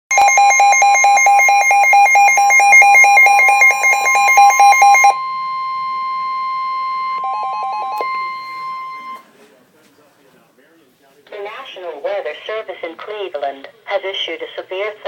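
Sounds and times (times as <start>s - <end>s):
electronic alert tone warbling: 0.1s - 5.2s, 7.0s - 9.2s.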